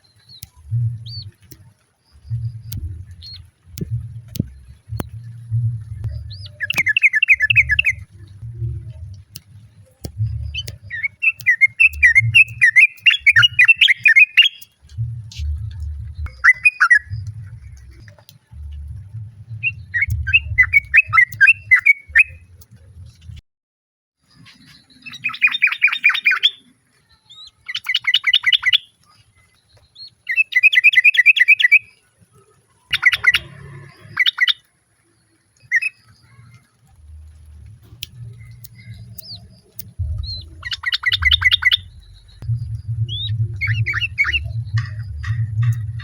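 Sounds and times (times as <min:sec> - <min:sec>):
other birds chirping: 0:00.0 - 0:22.8, 0:24.3 - 0:34.7, 0:35.3 - 0:46.0
low rumble: 0:00.5 - 0:11.2, 0:11.8 - 0:13.7, 0:14.8 - 0:23.4, 0:36.8 - 0:46.0
bird rapid chattering calls: 0:06.2 - 0:08.2, 0:10.4 - 0:15.5, 0:32.9 - 0:34.6, 0:38.1 - 0:42.4, 0:43.1 - 0:46.0.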